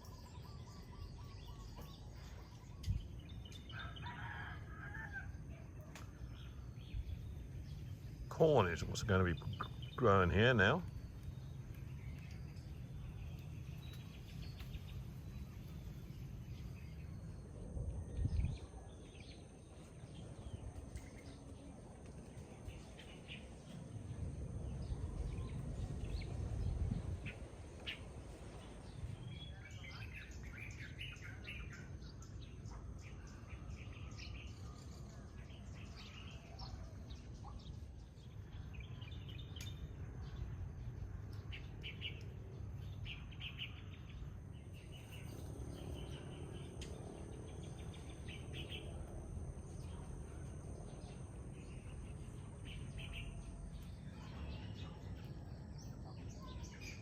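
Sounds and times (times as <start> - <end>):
small birds chirping: 0.0 - 4.4, 5.7 - 57.0.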